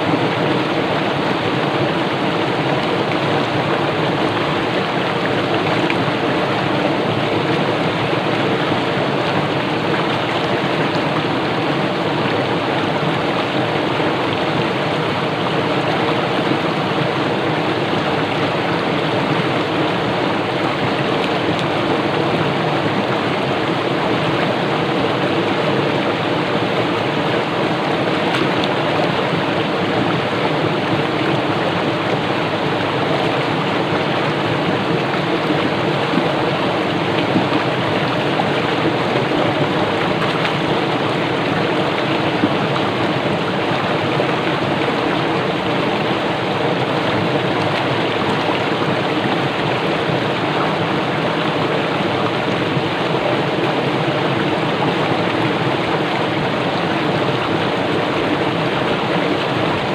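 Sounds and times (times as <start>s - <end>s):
stream rushing over rocks: 0.0s - 59.9s.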